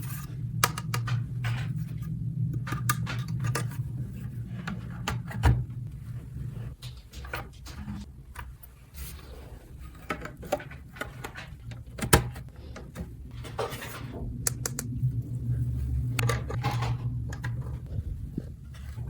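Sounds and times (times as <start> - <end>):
low hum: 0.0 - 8.4, 10.6 - 19.0.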